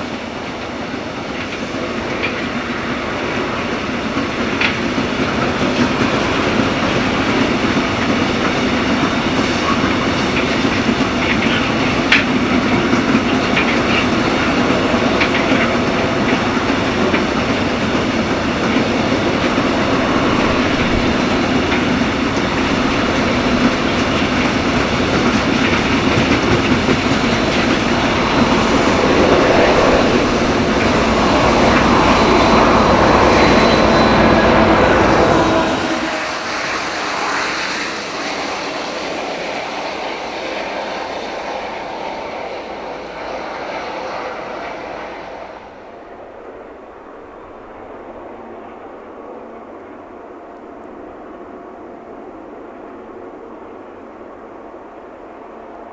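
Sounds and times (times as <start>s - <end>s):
freight train rolling past: 0.0s - 55.9s
wheels clicking over rail joints: 1.3s - 29.6s
faint wheel squeal: 27.6s - 39.2s.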